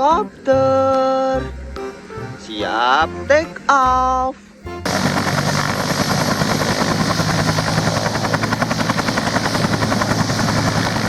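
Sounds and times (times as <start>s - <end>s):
helicopter engine drone: 4.8s - 11.0s
helicopter rotor blades chopping: 4.8s - 11.0s.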